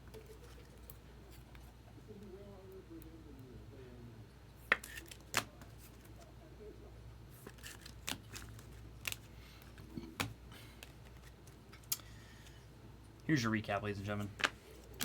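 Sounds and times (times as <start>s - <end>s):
cards rustling: 4.7s - 6.3s, 7.4s - 12.6s, 14.1s - 15.0s.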